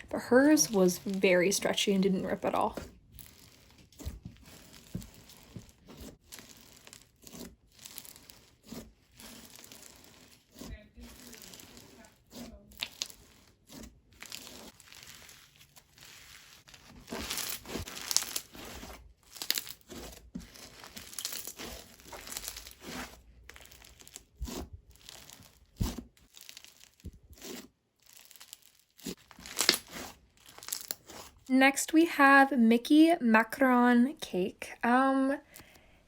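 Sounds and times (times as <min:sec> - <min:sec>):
slime crackling and crinkling: 0:00.0 - 0:32.2
slime popping: 0:12.7 - 0:31.3.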